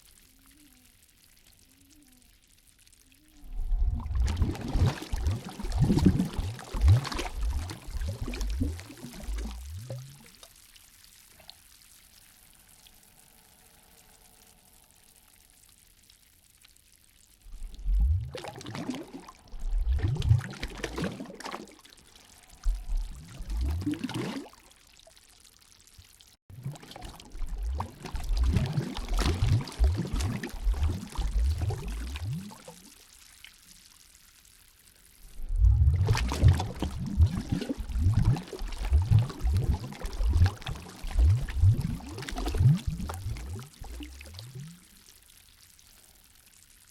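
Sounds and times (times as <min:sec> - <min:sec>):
lake water sloshing and splashing: 0:03.4 - 0:10.5, 0:17.4 - 0:25.2, 0:26.5 - 0:33.0, 0:35.3 - 0:45.0.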